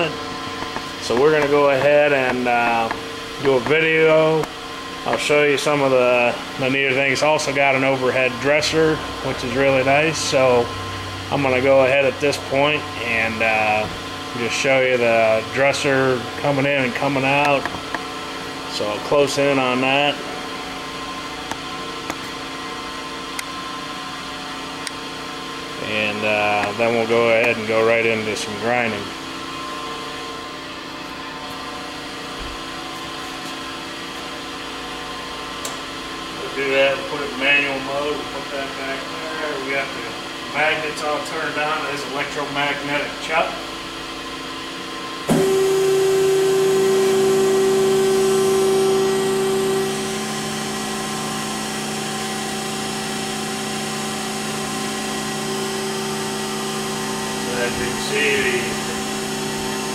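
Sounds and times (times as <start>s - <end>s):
surface grinder humming: 0.0s - 23.1s, 25.4s - 31.2s, 45.3s - 59.9s.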